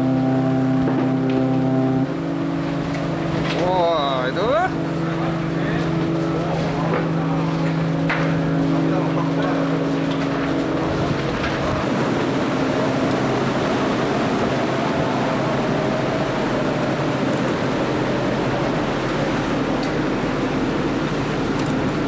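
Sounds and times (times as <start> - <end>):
low hum: 0.0 - 11.9
ship engines: 0.0 - 22.0
water rushing: 0.0 - 22.0
wind: 0.0 - 22.0.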